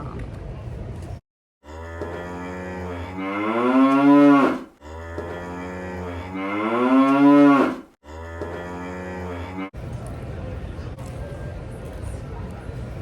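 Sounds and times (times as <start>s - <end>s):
cow mooing: 1.6s - 9.7s.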